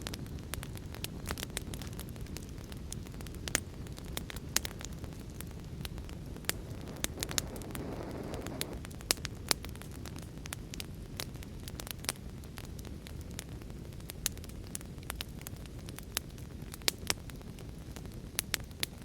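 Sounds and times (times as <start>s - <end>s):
wood fire crackling: 0.0s - 19.0s
soft hiss: 1.0s - 9.4s.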